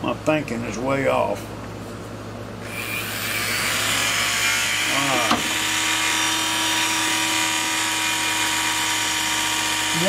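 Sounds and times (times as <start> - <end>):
power tool motor running: 2.6 - 10.0.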